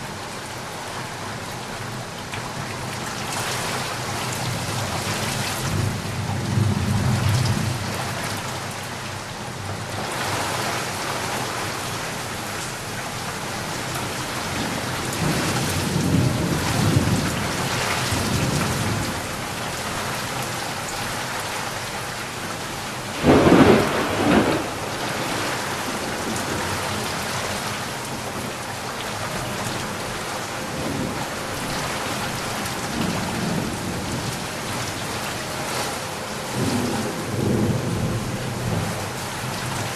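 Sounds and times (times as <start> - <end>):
heavy rain: 0.0 - 39.9
low rolling thunder: 14.0 - 20.1, 23.1 - 28.6, 29.4 - 35.4, 36.5 - 39.9
sharp thunderclap: 23.2 - 25.5.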